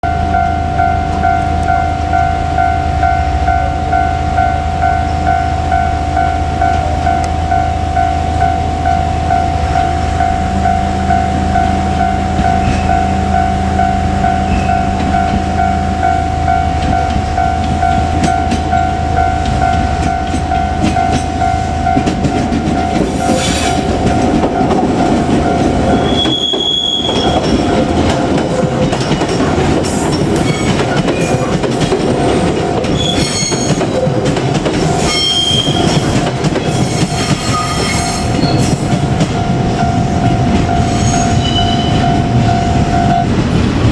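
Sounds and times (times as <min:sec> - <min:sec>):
level crossing alarm ringing: 0:00.0 - 0:32.4, 0:33.6 - 0:43.5
train wheels rumbling on rails: 0:00.1 - 0:43.9
rail-joint clatter: 0:16.8 - 0:43.9
high wheel squeals: 0:23.0 - 0:24.4, 0:25.9 - 0:27.8, 0:32.9 - 0:34.0, 0:34.8 - 0:39.0, 0:40.7 - 0:42.7.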